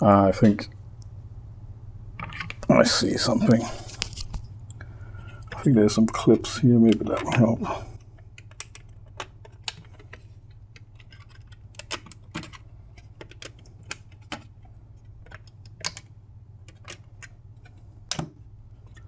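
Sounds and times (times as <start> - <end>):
plastic clips clicking: 5.4 - 10.2, 15.2 - 16.1.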